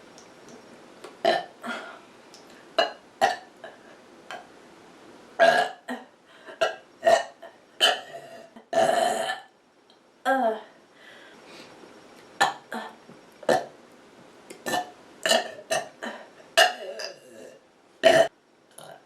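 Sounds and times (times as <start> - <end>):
person burping: 1.2 - 2.0, 2.8 - 3.5, 5.4 - 9.5, 12.4 - 13.7, 14.6 - 19.0.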